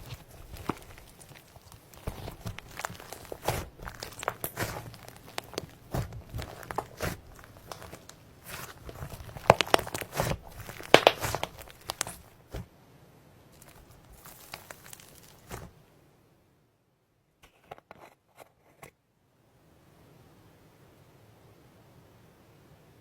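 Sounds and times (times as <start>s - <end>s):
slime crackling and popping: 0.0s - 12.6s, 13.6s - 15.8s.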